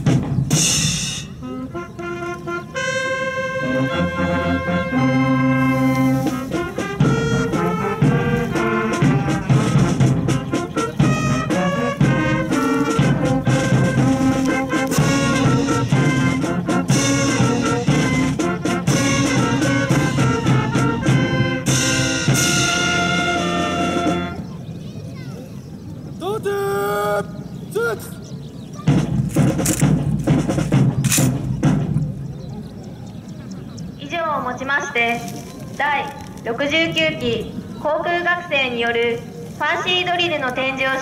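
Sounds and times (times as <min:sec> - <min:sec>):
brass band music: 0:00.0 - 0:24.4.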